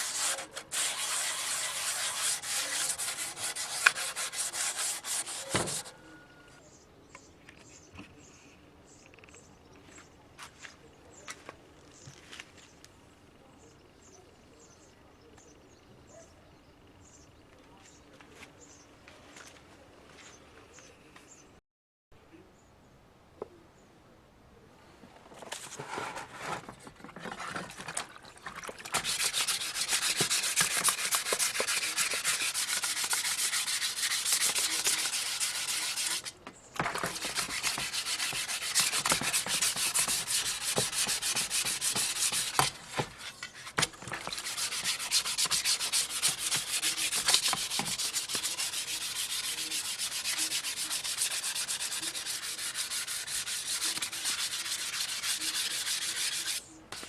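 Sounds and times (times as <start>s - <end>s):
sandpaper rubbing on metal: 0.0s - 6.0s, 28.9s - 57.0s.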